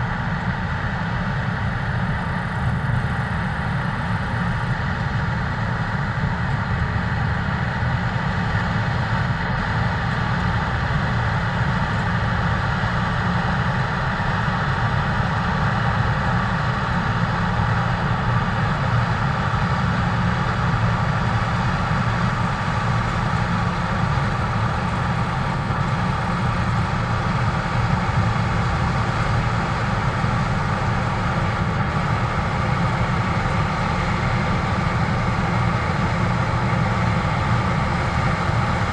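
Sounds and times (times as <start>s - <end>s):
combine harvester drone: 0.0s - 38.9s
thin steady whine: 13.8s - 38.9s.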